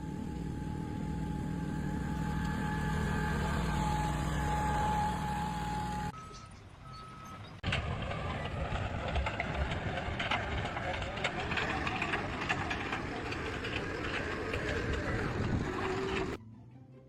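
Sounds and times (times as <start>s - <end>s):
heavy vehicle engine running: 0.0s - 16.4s
short beeps: 6.2s - 7.6s
clattering work sounds: 7.6s - 16.4s.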